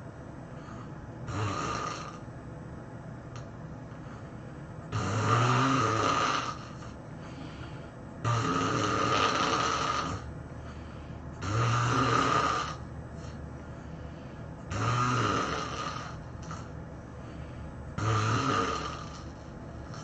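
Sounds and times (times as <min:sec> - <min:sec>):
quiet breathing: 0:00.4 - 0:01.2, 0:03.9 - 0:04.9, 0:06.4 - 0:08.2, 0:10.0 - 0:11.5, 0:12.7 - 0:14.7, 0:15.8 - 0:18.0
person snoring loudly: 0:01.3 - 0:02.2, 0:04.9 - 0:07.0, 0:08.2 - 0:10.3, 0:11.4 - 0:12.8, 0:14.7 - 0:16.7, 0:18.0 - 0:20.0.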